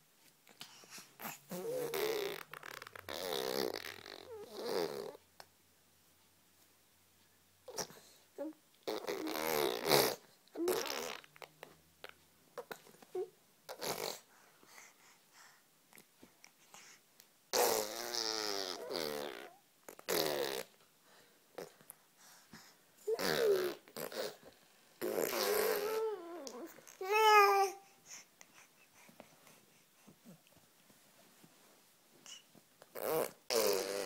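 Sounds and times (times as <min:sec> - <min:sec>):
baby vocalising buzzy noises: 0:00.9 - 0:05.2, 0:07.7 - 0:11.8, 0:12.6 - 0:14.2, 0:17.5 - 0:20.8, 0:23.0 - 0:29.1, 0:32.2 - 0:34.0.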